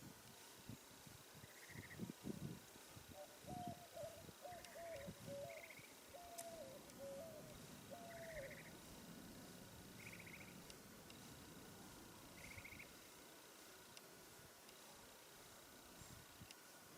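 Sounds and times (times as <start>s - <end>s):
high bird trills: 1.4s - 2.0s, 3.2s - 8.8s, 10.0s - 10.7s, 12.3s - 13.0s.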